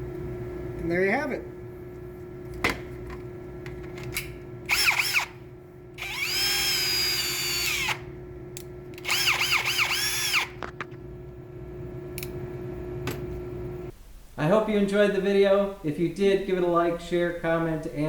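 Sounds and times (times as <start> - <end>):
cordless drill whining: 4.7 - 5.4, 6.0 - 8.1, 9.0 - 10.7.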